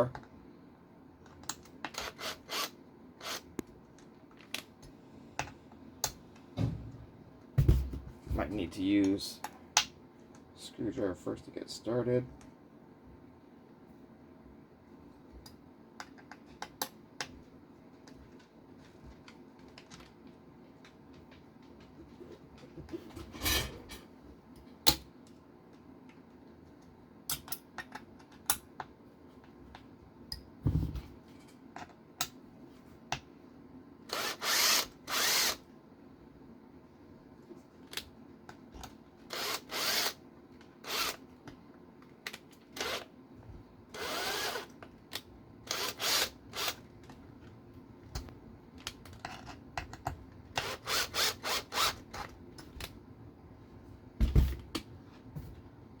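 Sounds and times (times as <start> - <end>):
electric screwdriver driving screws: 34.1 - 35.6, 39.3 - 40.2, 40.8 - 41.2, 44.0 - 44.7, 45.7 - 46.8.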